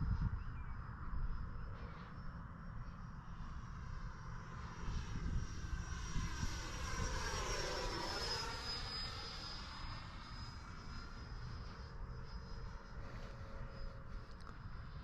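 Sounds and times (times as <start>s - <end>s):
wind rumble on microphone: 0.0s - 8.9s
electric ducted-fan jet whine: 0.0s - 15.0s.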